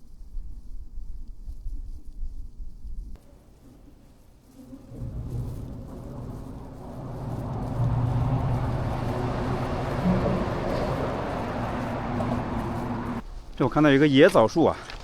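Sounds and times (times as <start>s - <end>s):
road noise: 4.8s - 13.2s
vehicle engine running: 4.9s - 13.2s.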